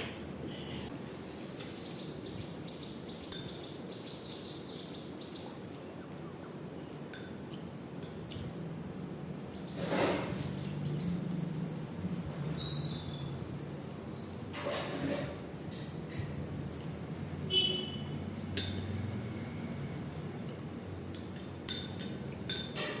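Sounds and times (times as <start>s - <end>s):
dishware clinking: 21.2s - 23.0s.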